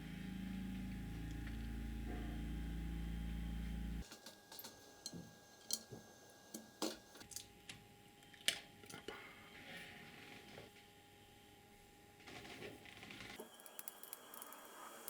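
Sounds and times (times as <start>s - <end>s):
small metal parts clicking: 13.4s - 14.7s.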